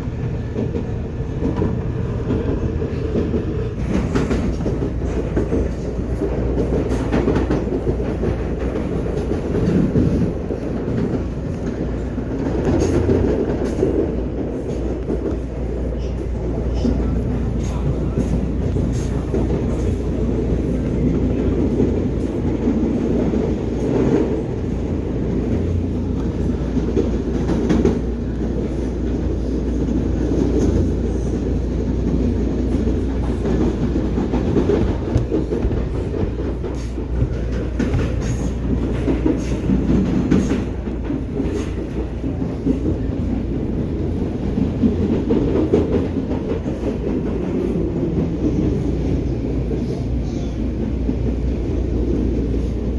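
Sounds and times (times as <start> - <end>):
train rumbling on track: 0.0 - 52.9.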